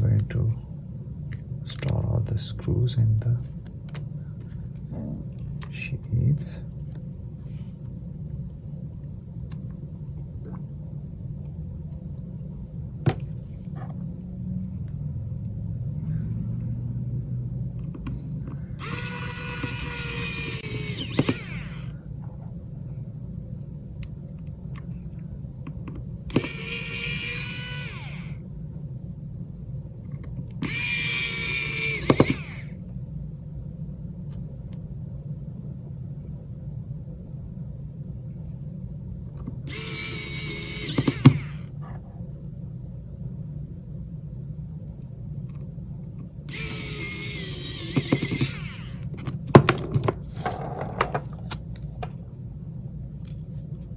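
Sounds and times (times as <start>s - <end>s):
steady low hum: 0.0s - 53.9s
small power tool whining: 18.7s - 22.0s, 26.3s - 28.4s, 30.6s - 32.8s, 39.7s - 41.7s, 46.5s - 51.2s.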